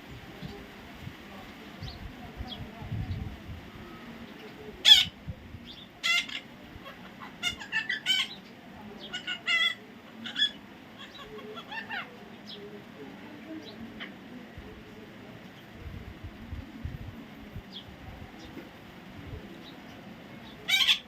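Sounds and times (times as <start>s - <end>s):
parrot squawking: 4.8s - 5.2s, 6.0s - 8.4s, 9.1s - 12.1s, 20.7s - 21.0s.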